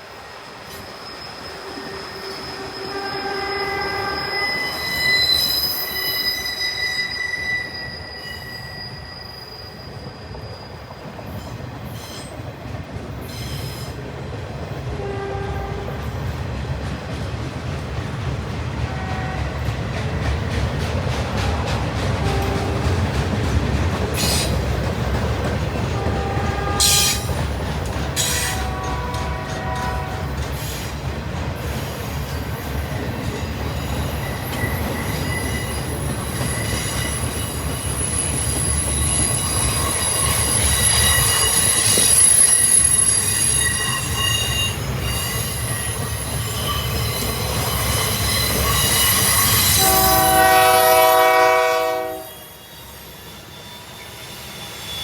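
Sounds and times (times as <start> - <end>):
freight train rumbling: 0.0 - 55.0
wheel squeal: 0.7 - 11.1, 33.6 - 50.4, 52.5 - 55.0
locomotive horn blasts: 2.6 - 5.2, 14.9 - 16.0, 18.9 - 19.6, 22.2 - 23.0, 26.0 - 27.3, 28.2 - 30.4, 49.6 - 52.6.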